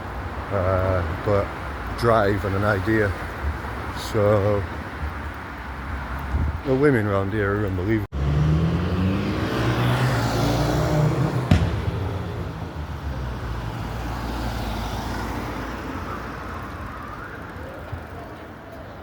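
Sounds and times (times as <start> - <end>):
traffic noise: 0.0 - 19.0
vehicle engine passing by: 8.1 - 15.5
sharp knock: 11.4 - 12.6.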